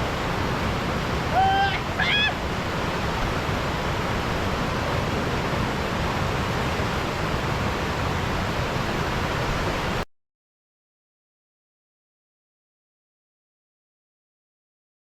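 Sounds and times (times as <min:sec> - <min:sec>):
waterfall roaring: 0:00.0 - 0:10.0.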